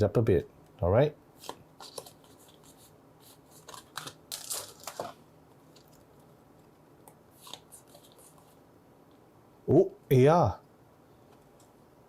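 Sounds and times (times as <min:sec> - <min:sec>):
cards and wrappers rustling: 0:01.4 - 0:06.7, 0:07.3 - 0:08.6.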